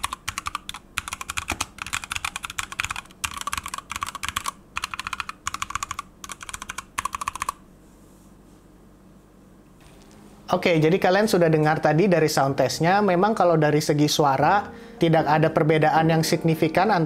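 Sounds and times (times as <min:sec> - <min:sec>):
mechanical keyboard clacking: 0:00.0 - 0:07.6.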